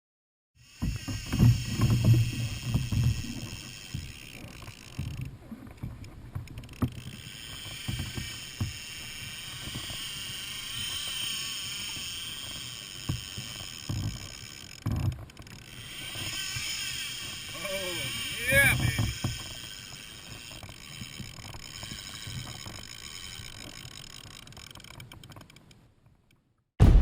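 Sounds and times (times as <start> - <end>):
water slapping kayak hull: 0.6 - 26.2
knocks and thumps on hull: 0.8 - 4.2.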